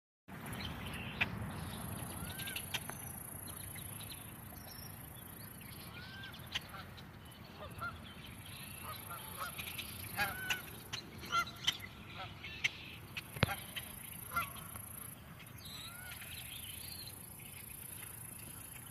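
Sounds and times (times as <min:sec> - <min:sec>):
birds calling: 0:00.3 - 0:18.9.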